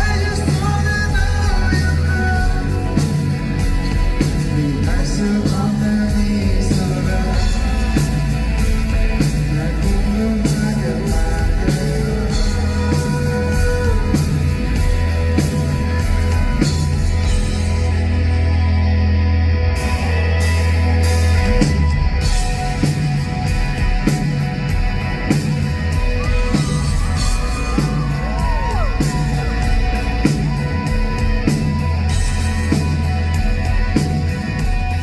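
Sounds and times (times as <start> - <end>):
person singing: 0.0 - 16.8
live rock band playing: 0.0 - 35.0
drum beat: 21.7 - 35.0.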